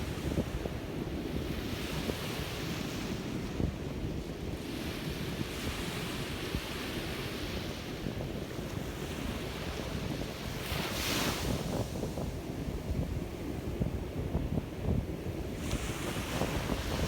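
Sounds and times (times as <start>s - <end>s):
wind on the microphone: 0.0s - 17.0s
surf breaking on a beach: 4.5s - 17.0s.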